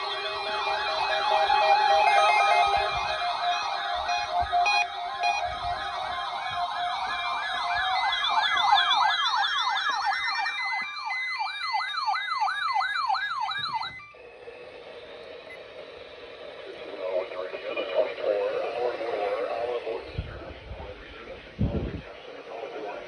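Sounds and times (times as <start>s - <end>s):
beeps: 0.0s - 10.8s, 13.4s - 20.3s
wavering siren alert tones: 0.0s - 22.5s.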